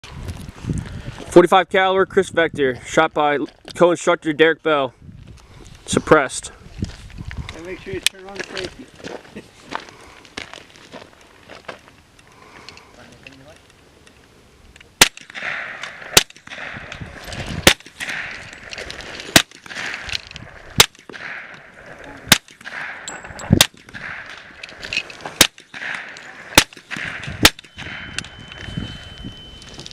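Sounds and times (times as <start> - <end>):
suppressed rifle shots: 15.0 - 18.5, 19.3 - 20.2, 20.8 - 28.3.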